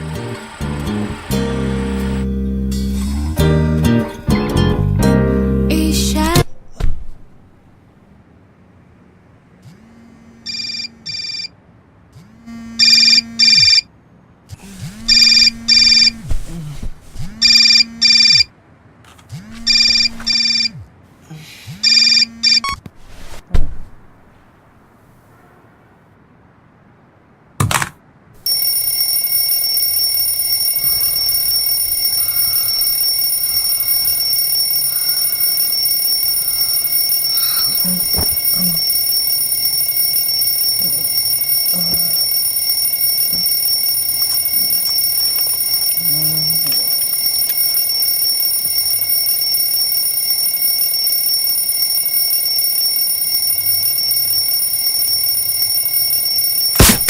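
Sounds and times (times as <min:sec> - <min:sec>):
alarm clock ringing: 0:28.5 - 0:57.0.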